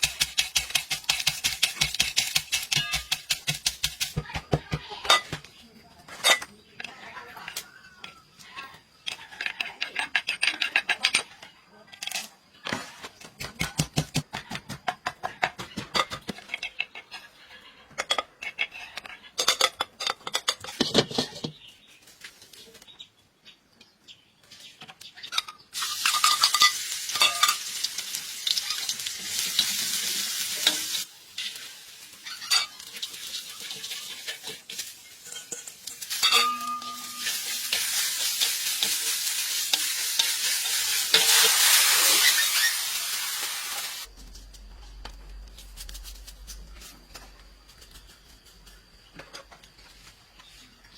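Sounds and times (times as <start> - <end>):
utensils knocking on pots: 0.0 - 5.5, 25.8 - 27.7, 32.3 - 41.7
food sizzling in hot oil: 25.8 - 44.1.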